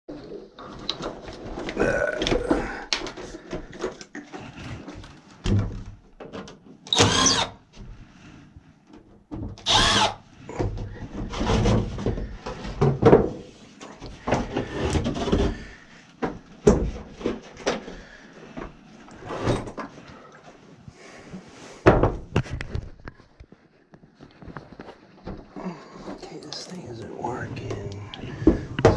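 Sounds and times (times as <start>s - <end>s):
power drill running: 6.9s - 7.5s, 9.6s - 10.2s.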